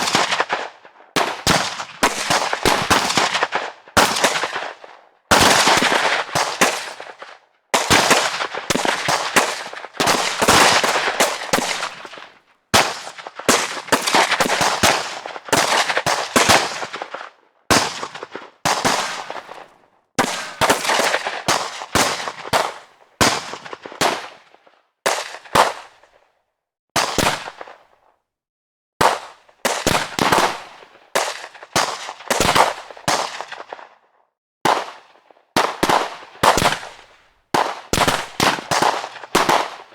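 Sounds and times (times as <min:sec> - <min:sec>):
rapid gunshots with echo: 0:00.0 - 0:24.4.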